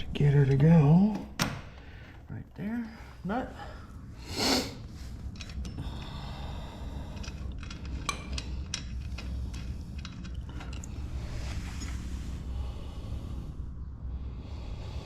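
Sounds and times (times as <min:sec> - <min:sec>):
metal nut and bolt clinking: 0:04.9 - 0:06.1, 0:06.9 - 0:12.1.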